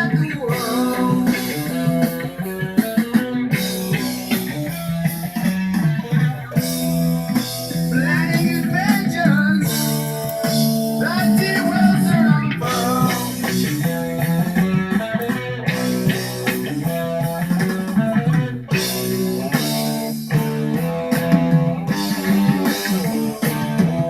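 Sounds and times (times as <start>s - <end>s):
rock music: 0.0s - 24.0s.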